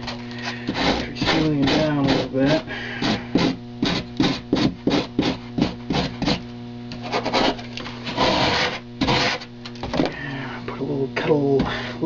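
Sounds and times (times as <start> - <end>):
tool scraping foam: 0.0 - 9.5
electrical hum: 0.0 - 12.0.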